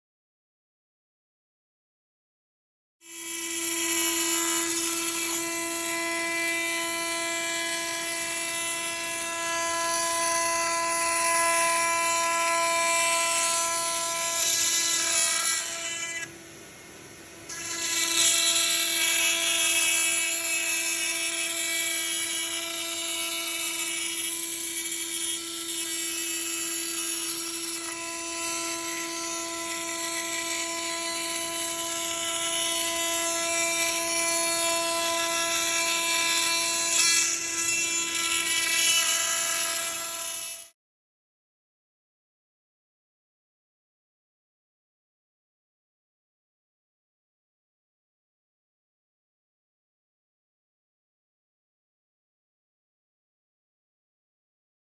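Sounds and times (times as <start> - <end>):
router bit cutting wood: 3.0 - 16.4, 17.4 - 40.8
router spindle whining: 3.1 - 16.5, 17.4 - 40.7.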